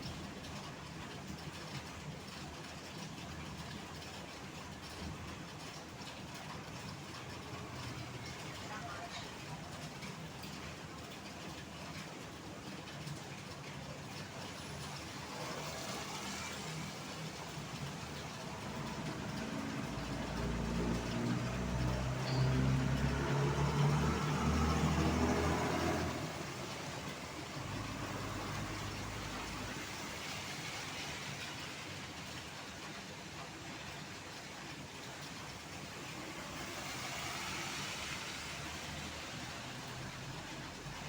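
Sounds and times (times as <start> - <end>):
rain hiss: 0.0 - 41.0
traffic on wet road: 0.0 - 41.0
diesel vehicle passing: 15.2 - 31.8.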